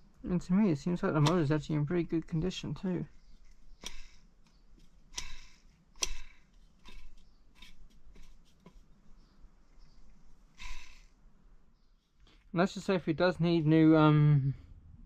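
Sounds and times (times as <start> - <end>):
plastic blender parts clicking: 3.8 - 8.4.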